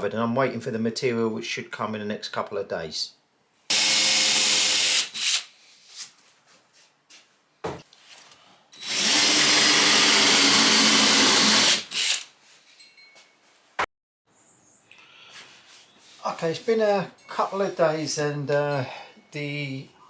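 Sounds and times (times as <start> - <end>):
electric drill boring through panel: 3.7 - 5.5, 8.8 - 12.3.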